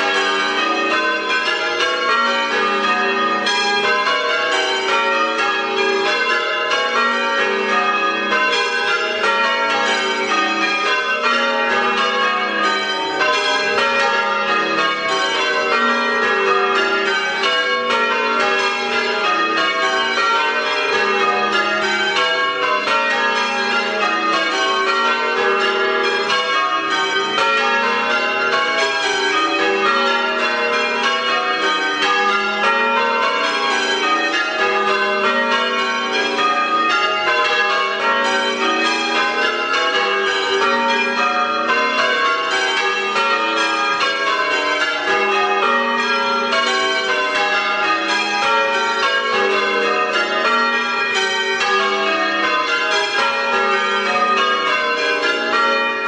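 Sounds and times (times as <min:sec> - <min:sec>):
church bells ringing: 0:00.0 - 0:56.0.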